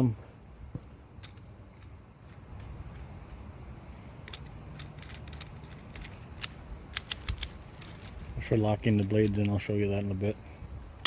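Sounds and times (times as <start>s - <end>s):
low steady hum: 0.0s - 11.0s
metal parts clicking and tapping: 1.2s - 3.5s, 4.2s - 8.1s.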